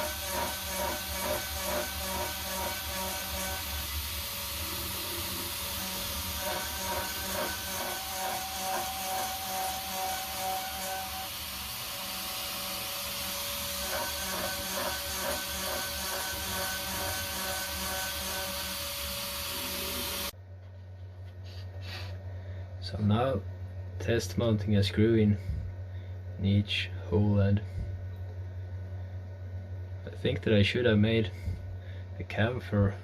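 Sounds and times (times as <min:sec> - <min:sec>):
router spindle milling steel: 0:00.0 - 0:20.3.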